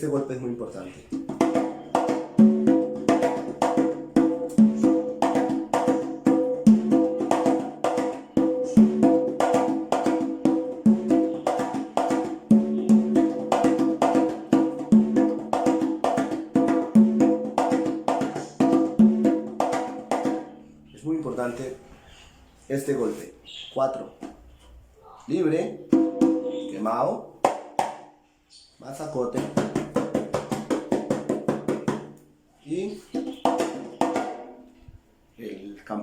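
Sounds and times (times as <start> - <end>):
congas played by hand: 1.1 - 20.7, 25.7 - 28.2, 29.2 - 32.2, 33.0 - 34.6.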